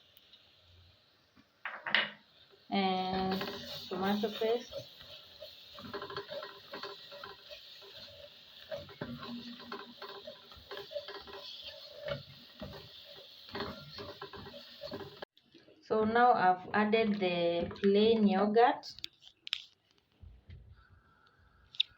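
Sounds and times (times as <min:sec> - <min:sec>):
frying hiss: 0:00.0 - 0:15.3
spoon tapping and scraping pot: 0:03.0 - 0:15.3.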